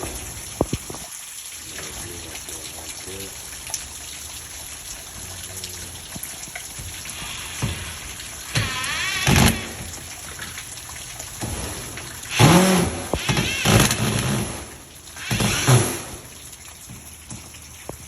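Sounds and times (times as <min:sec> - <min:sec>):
heavy rain pouring: 0:00.0 - 0:18.0
sharp knocks: 0:06.8 - 0:10.5, 0:11.4 - 0:16.3.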